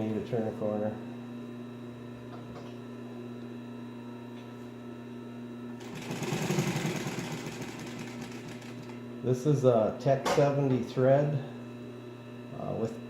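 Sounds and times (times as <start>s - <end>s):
sewing machine stitching clatter: 5.8s - 8.9s
sewing machine motor humming: 5.8s - 9.0s.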